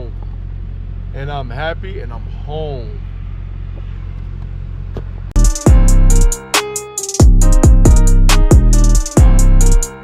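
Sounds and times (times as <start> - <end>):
truck engine idling: 0.0 - 6.3
loud music with heavy drum beat: 5.4 - 10.0.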